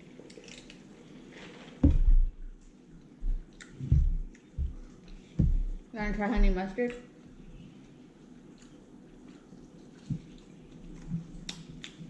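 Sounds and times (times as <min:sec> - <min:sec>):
chewing: 0:00.1 - 0:01.0, 0:02.9 - 0:05.8, 0:06.9 - 0:12.0
dull low thumps: 0:01.8 - 0:02.6, 0:03.2 - 0:06.7.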